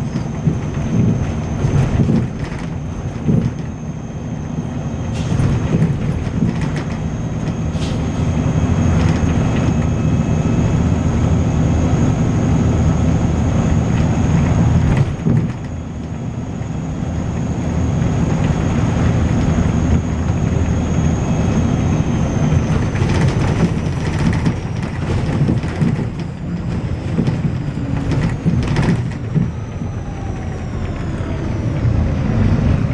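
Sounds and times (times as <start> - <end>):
bus body rattles: 0.0 - 32.9
bus engine drone: 0.0 - 32.9.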